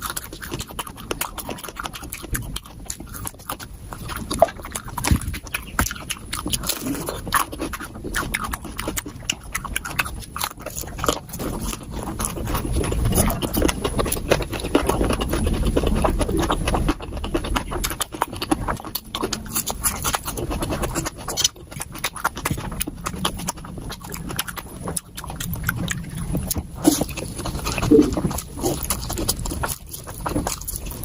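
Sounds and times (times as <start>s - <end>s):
sped-up chewing and slurping: 0.0s - 31.0s.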